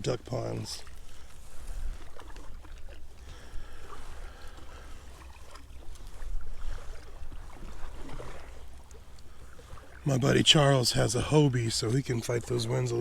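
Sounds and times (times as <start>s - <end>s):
paddle splashing in water: 0.8s - 10.4s.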